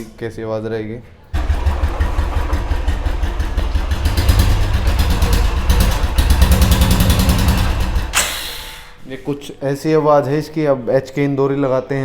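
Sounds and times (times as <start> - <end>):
motorcycle engine idling: 1.4 - 9.0.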